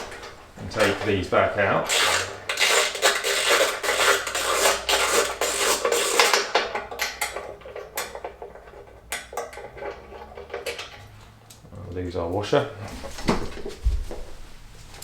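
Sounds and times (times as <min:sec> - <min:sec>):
socket wrench ratcheting: 0:01.9 - 0:08.4
metal bolts clinking: 0:06.0 - 0:11.4.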